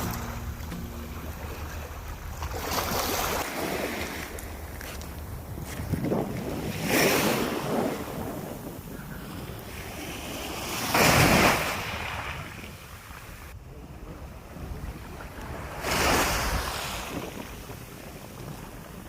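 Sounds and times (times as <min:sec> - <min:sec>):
sea waves washing onto shore: 0:00.0 - 0:13.6
wind on microphone: 0:00.0 - 0:19.0.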